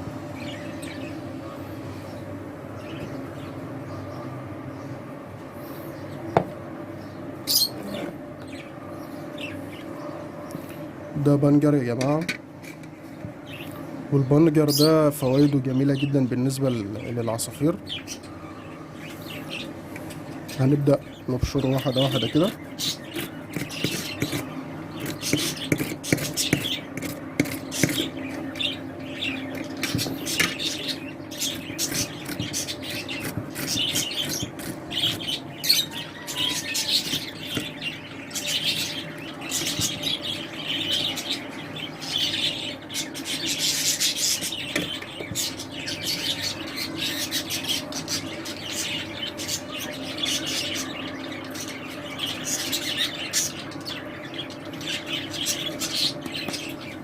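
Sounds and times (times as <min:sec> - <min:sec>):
small birds chirping: 0:00.0 - 0:57.0
beetroot grating on a grater: 0:21.7 - 0:28.8, 0:29.7 - 0:35.8.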